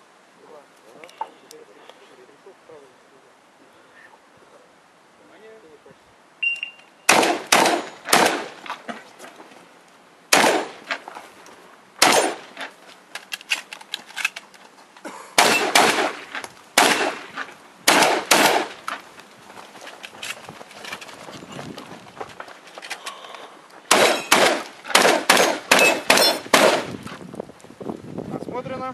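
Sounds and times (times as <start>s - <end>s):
shotgun shots: 7.1s - 8.7s, 10.3s - 10.9s, 12.0s - 12.6s, 15.4s - 18.8s, 23.9s - 27.0s.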